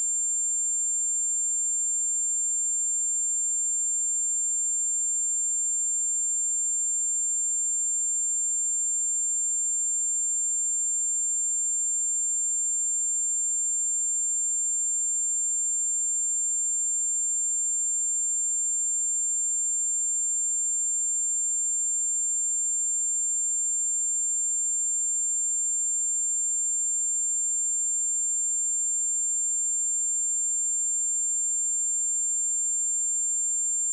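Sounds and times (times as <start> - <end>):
high sine wave test tone: 0.0 - 33.9.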